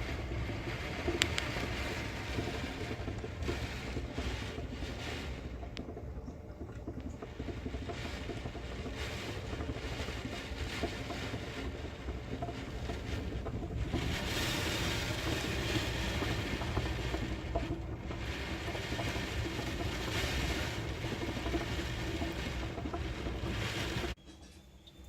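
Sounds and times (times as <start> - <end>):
heavy rain: 0.0 - 6.0, 6.8 - 24.2.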